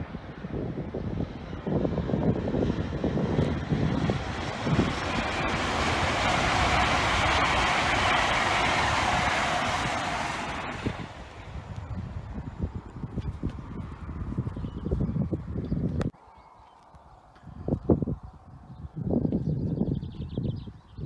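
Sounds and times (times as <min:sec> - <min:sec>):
high-speed train passing: 0:00.0 - 0:14.5
wind buffeting microphone: 0:00.0 - 0:16.2, 0:17.0 - 0:21.0.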